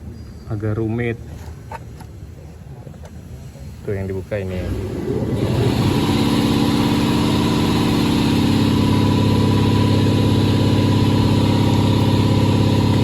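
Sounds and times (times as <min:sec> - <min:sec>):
diesel engine idling: 0:04.5 - 0:13.0.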